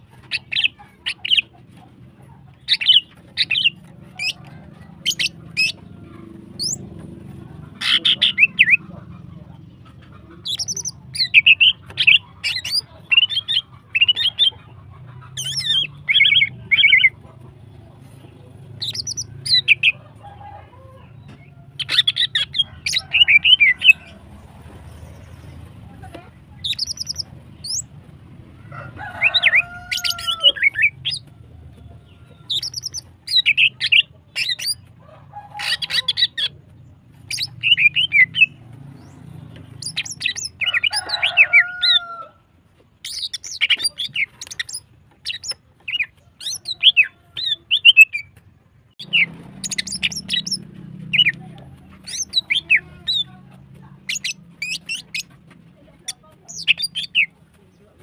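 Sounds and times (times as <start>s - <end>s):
bird chirping phrases: 0.2s - 1.6s, 2.6s - 20.0s, 21.2s - 28.0s, 29.2s - 31.3s, 32.0s - 34.9s, 35.6s - 42.1s, 43.0s - 58.0s
low bending bird calls: 48.9s - 53.3s.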